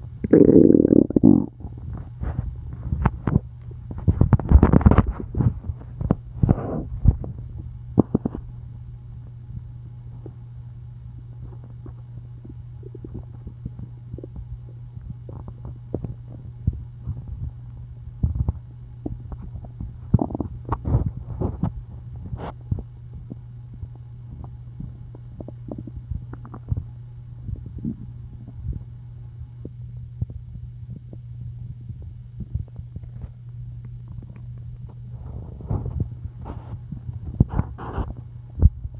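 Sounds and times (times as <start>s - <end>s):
steady low hum: 0.0s - 38.9s
stomach growling: 0.2s - 1.9s, 8.0s - 8.4s, 11.4s - 17.6s, 18.2s - 28.8s, 33.9s - 36.1s.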